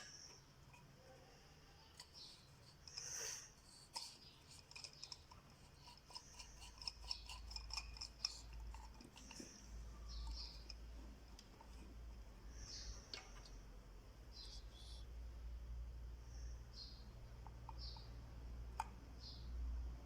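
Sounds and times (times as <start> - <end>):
small parts clicking and scratching: 1.8 - 13.6.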